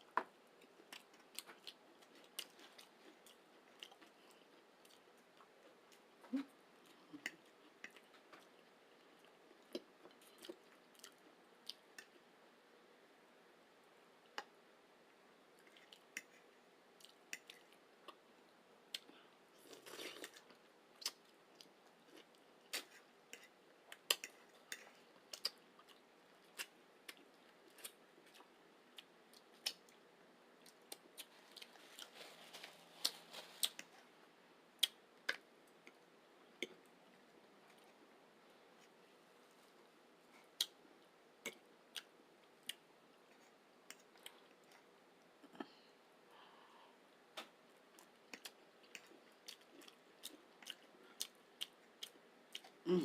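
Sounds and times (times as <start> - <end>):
chewing with wet mouth clicks: 17.0 - 18.2, 19.9 - 30.0, 40.4 - 40.8, 47.9 - 52.8.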